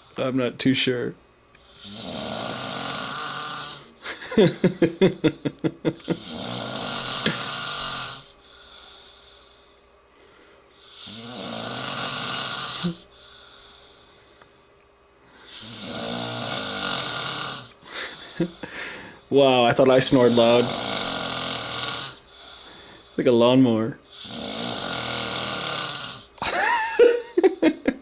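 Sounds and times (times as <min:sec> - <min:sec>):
man snoring loudly: 0:01.6 - 0:05.3, 0:05.9 - 0:09.2, 0:10.8 - 0:13.6, 0:15.4 - 0:22.7, 0:24.1 - 0:27.8
quiet breathing: 0:07.0 - 0:11.3, 0:12.6 - 0:15.8, 0:17.5 - 0:19.3, 0:20.0 - 0:23.2.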